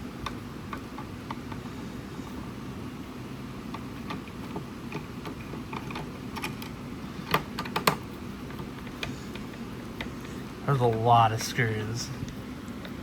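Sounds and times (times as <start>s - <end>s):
small clicks and taps: 7.3s - 11.0s.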